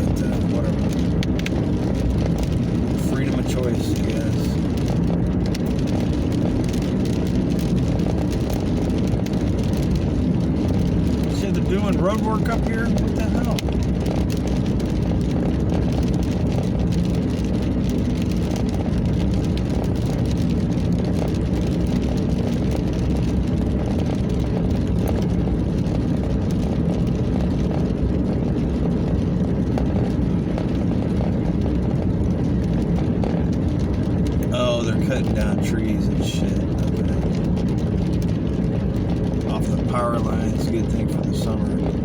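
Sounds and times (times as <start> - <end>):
car road and engine noise: 0.0 - 42.0
rain: 0.0 - 42.0.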